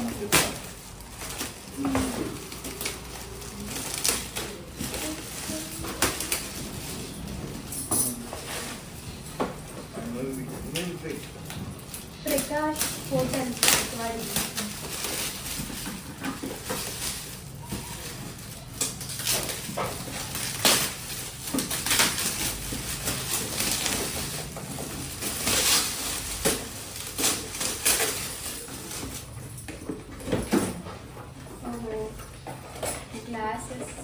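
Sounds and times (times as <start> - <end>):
wrapping paper crinkling and tearing: 0.0 - 7.6, 10.0 - 29.3
items knocking and clinking: 0.0 - 34.0.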